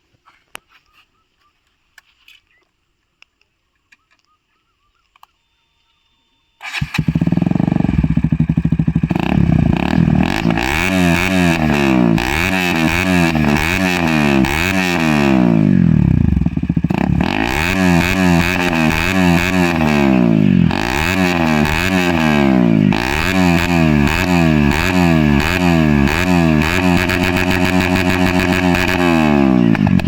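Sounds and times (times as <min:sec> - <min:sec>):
motorcycle engine revving: 0:06.6 - 0:30.0.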